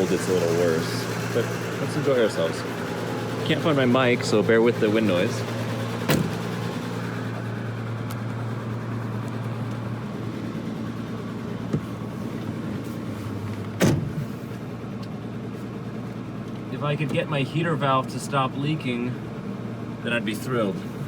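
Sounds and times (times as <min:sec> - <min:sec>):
car engine from inside cabin: 0:00.0 - 0:21.0
loud thump: 0:06.0 - 0:06.4.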